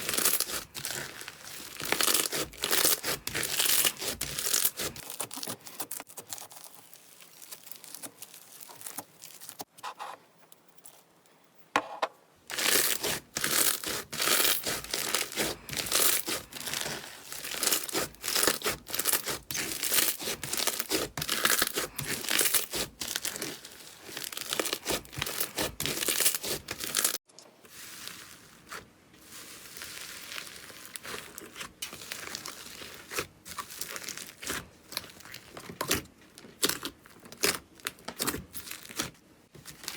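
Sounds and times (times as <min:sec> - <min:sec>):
slime crackling and popping: 0:00.0 - 0:09.7, 0:12.5 - 0:27.2, 0:29.6 - 0:39.9.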